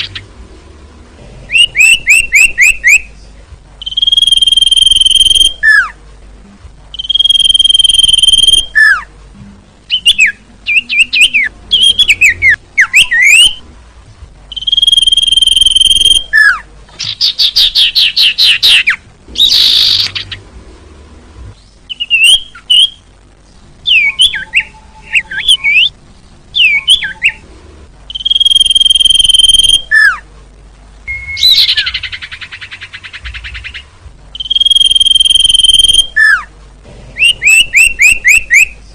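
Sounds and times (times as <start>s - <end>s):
bird whistling: 1.5s - 3.1s, 3.8s - 5.9s, 7.0s - 9.1s, 9.9s - 13.6s, 14.5s - 20.3s, 21.9s - 23.0s, 23.9s - 26.0s, 26.6s - 27.4s, 28.1s - 30.2s, 31.1s - 33.8s, 34.4s - 36.5s, 37.2s - 38.8s
bird twittering: 1.5s - 3.2s, 3.8s - 5.9s, 7.0s - 9.1s, 9.9s - 13.6s, 14.5s - 20.4s, 21.6s - 23.0s, 26.6s - 27.4s, 28.1s - 30.2s, 31.1s - 36.5s, 37.2s - 38.8s.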